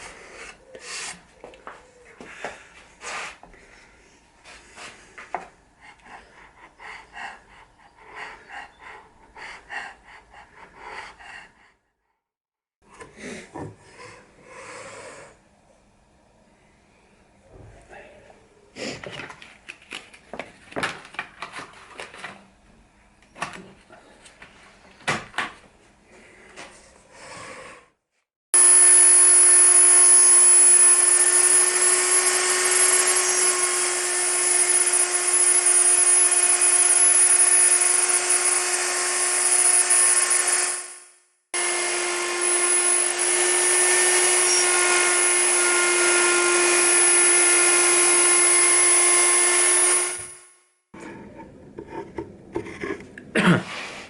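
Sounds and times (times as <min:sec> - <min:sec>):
electric router whining: 0:28.6 - 0:50.5.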